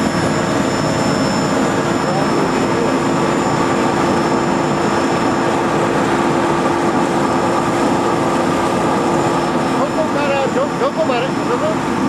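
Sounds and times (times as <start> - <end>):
processing machinery whirring: 0.0 - 12.0.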